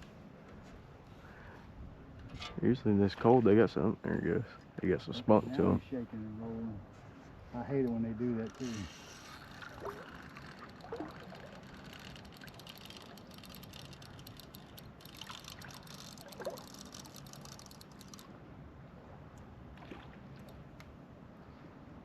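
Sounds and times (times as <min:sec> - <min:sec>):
fine crackle: 0:08.5 - 0:18.3
water trickling and splashing: 0:08.5 - 0:20.8.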